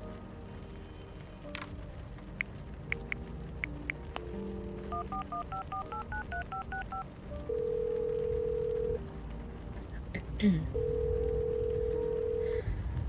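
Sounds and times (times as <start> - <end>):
touch-tone keypad beeps: 4.9 - 7.0
phone ringing tone: 4.9 - 9.0, 10.8 - 12.4.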